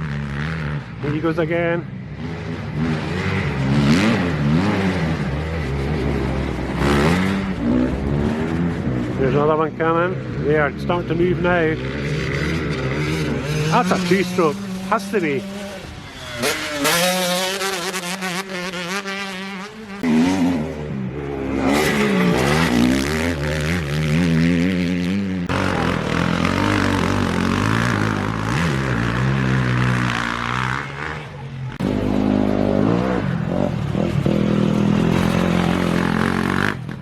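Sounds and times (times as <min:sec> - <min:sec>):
dirt bike engines revving: 0:00.0 - 0:37.0.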